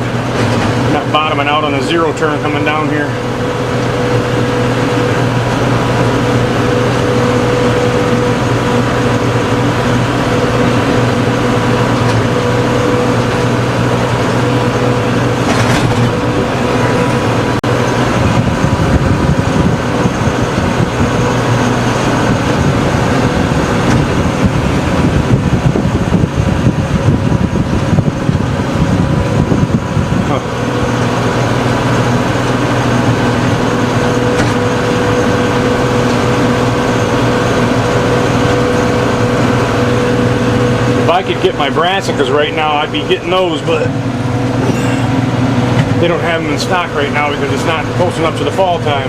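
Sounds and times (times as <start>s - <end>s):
tractor engine rumbling under load: 0.0s - 49.0s.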